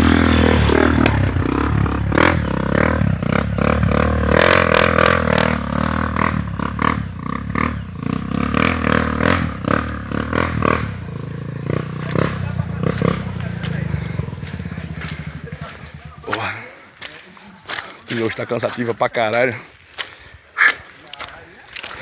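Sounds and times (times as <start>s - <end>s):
motorcycle engine at low revs: 0.0s - 16.6s.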